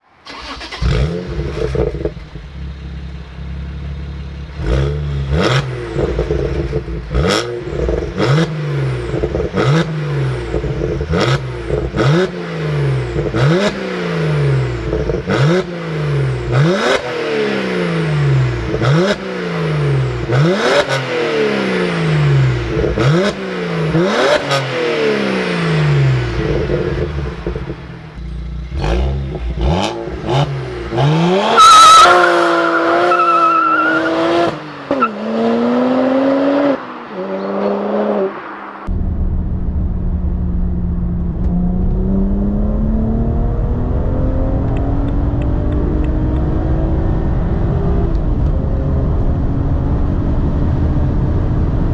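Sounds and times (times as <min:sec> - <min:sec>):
car engine revving: 0:00.0 - 0:51.9
exhaust cracks: 0:00.2 - 0:17.0, 0:22.2 - 0:33.8.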